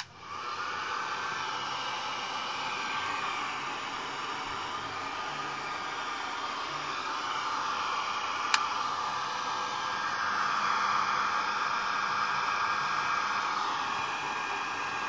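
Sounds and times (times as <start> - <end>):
hairdryer blowing: 0.0 - 15.0
sharp click: 8.5 - 8.7.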